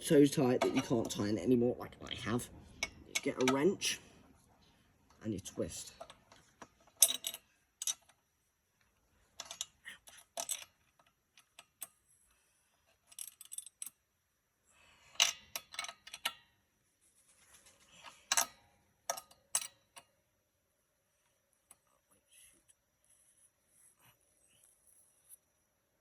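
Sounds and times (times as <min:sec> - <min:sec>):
wrench clicking and clinking: 0:05.9 - 0:08.1, 0:09.4 - 0:10.7.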